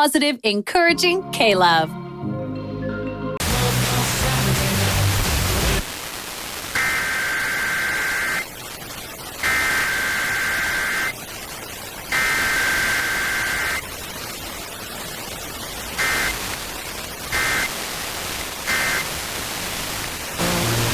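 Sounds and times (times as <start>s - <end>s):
radio static: 3.4s - 20.9s
two-tone digital data screeches: 6.8s - 8.6s, 9.4s - 11.2s, 12.1s - 13.8s, 16.0s - 16.4s, 17.3s - 17.7s, 18.7s - 19.1s.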